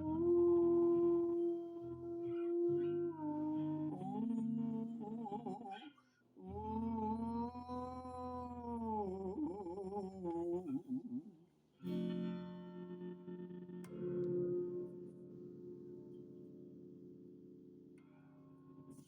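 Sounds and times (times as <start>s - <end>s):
person humming wordlessly: 0.0s - 12.1s
guitar: 0.0s - 19.0s.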